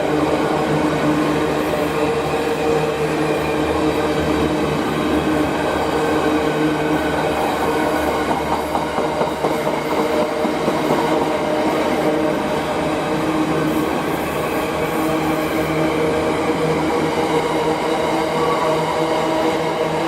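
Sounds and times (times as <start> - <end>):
freight train passing: 0.0 - 20.0.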